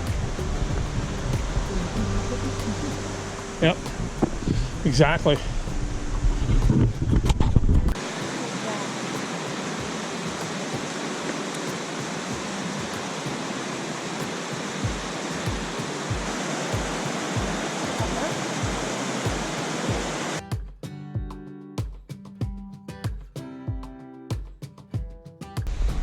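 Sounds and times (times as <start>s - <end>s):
background music with bass beat: 0.0s - 7.2s
falling water rushing: 0.0s - 20.4s.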